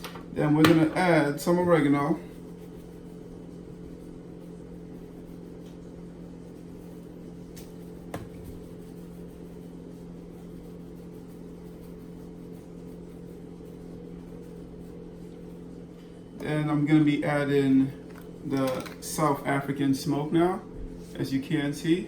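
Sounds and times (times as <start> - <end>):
kitchen appliance humming: 0.0 - 2.3, 16.0 - 22.0.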